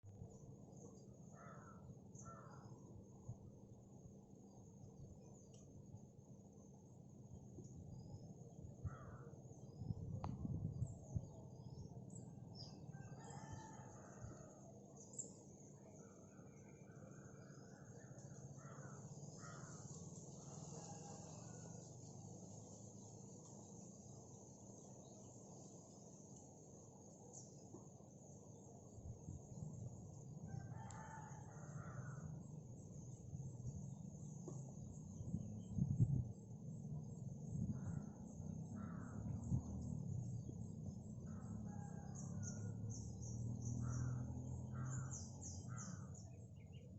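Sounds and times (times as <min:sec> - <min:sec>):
rooster crowing faintly: 0:12.6 - 0:14.8, 0:16.0 - 0:22.0, 0:30.4 - 0:32.4, 0:41.2 - 0:43.2.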